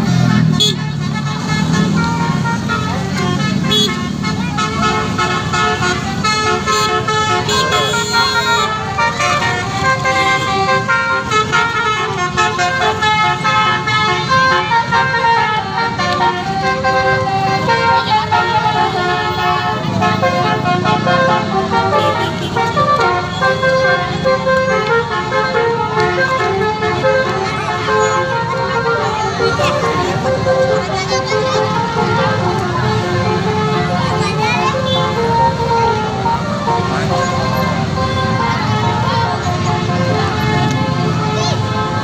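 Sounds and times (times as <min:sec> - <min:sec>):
musical air horn melody: 0:00.0 - 0:42.0.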